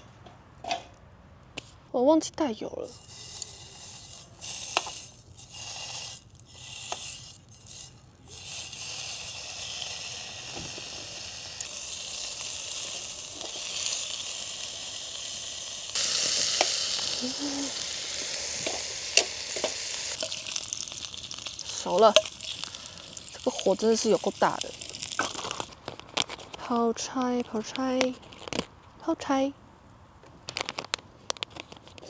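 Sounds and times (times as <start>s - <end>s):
food sizzling in a pan: 2.9s - 25.8s.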